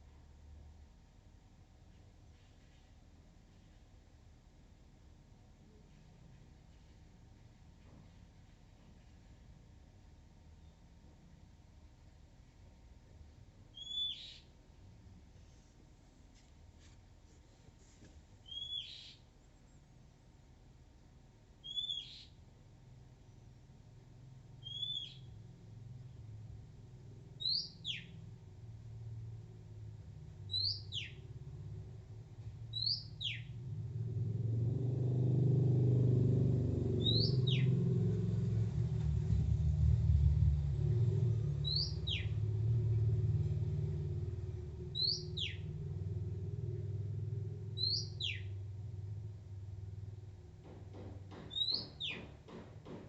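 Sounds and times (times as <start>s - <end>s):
bird whistled call: 13.7s - 14.5s, 18.4s - 19.2s, 21.6s - 22.3s, 24.6s - 25.3s, 27.4s - 28.2s, 30.5s - 31.2s, 32.7s - 33.5s, 37.0s - 37.7s, 41.6s - 42.3s, 45.0s - 45.6s, 47.8s - 48.5s
low rumble: 37.2s - 50.3s.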